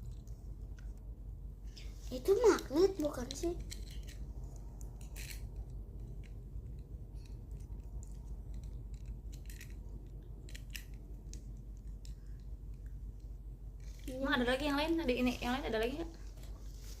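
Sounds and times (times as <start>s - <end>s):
low steady hum: 0.0s - 17.0s
small plastic parts clicking: 3.2s - 14.0s.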